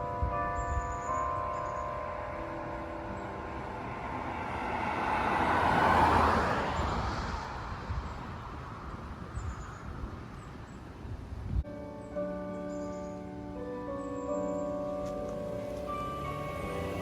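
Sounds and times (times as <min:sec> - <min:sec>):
vehicle driving past: 0:03.1 - 0:08.2, 0:15.2 - 0:17.0.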